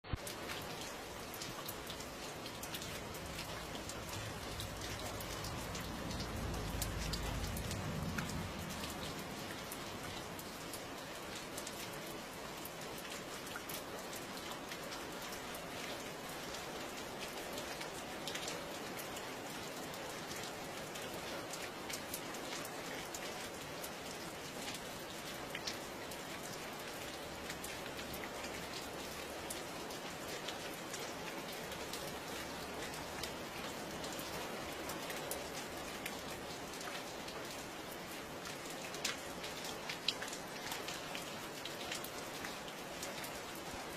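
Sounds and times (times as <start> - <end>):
rain drops ticking: 0.0 - 43.9
low rumble: 4.6 - 9.8.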